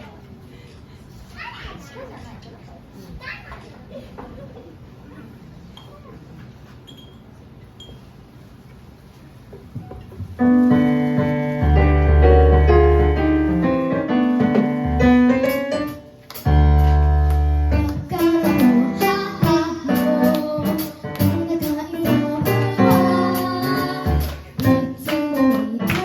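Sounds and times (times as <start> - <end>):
electric keyboard chords: 10.4 - 26.0
low bass notes: 11.6 - 15.3, 16.5 - 18.2.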